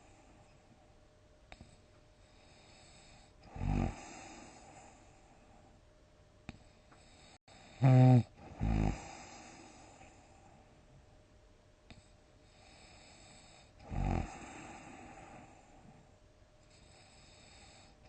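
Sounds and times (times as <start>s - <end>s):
person snoring loudly: 3.5s - 4.6s, 7.5s - 9.8s, 13.8s - 15.5s.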